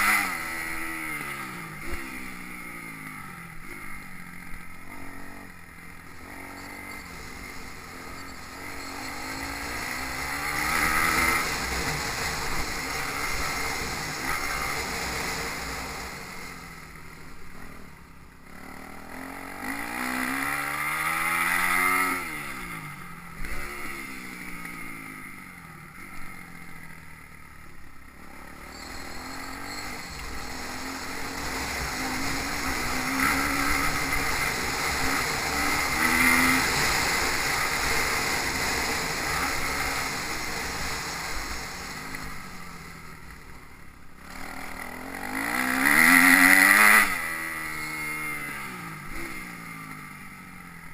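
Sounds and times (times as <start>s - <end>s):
motocross bikes revving past: 0.0s - 50.9s.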